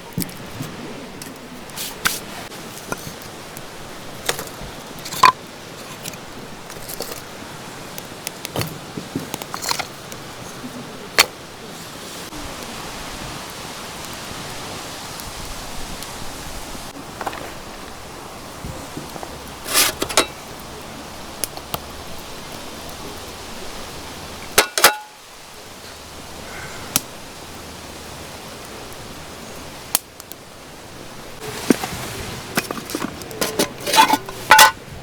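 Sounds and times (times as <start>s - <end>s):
outdoor hiss: 0.0s - 35.0s.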